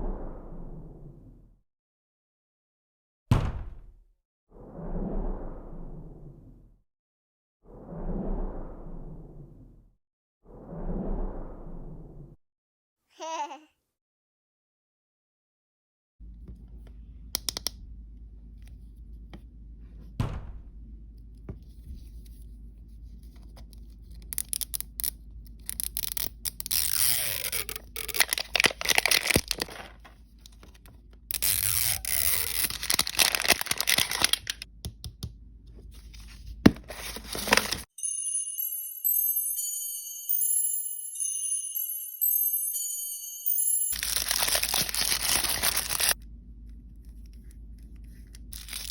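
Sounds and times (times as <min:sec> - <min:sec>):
plastic packaging crinkling and ripping: 0:24.2 - 0:34.7, 0:36.2 - 0:37.9, 0:44.0 - 0:46.2, 0:48.4 - 0:48.9
jingly chime tune: 0:37.9 - 0:44.1.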